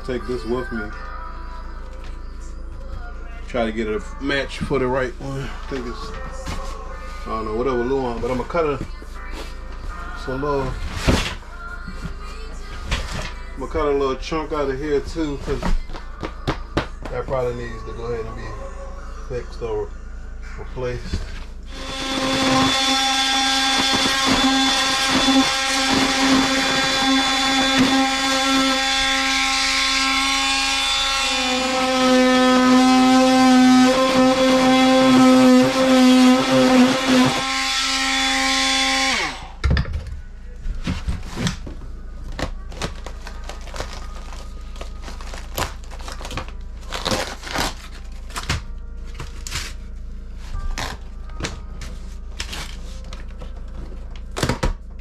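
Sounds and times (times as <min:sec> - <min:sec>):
power tool motor whine: 0:21.7 - 0:39.6.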